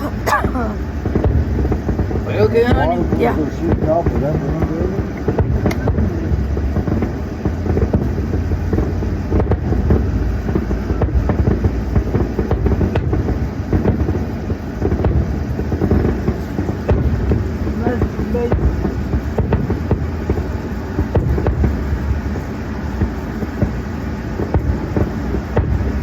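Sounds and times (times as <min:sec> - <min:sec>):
distant fireworks popping: 0:00.0 - 0:26.0
low rumble: 0:00.0 - 0:26.0.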